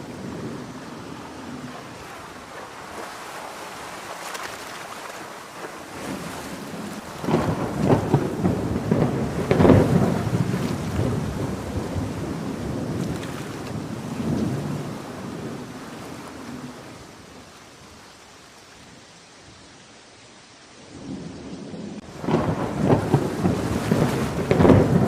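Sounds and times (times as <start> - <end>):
thunder clap rumbling: 0.0 - 3.9, 5.8 - 17.2, 21.0 - 25.0
steady rain: 0.0 - 25.0.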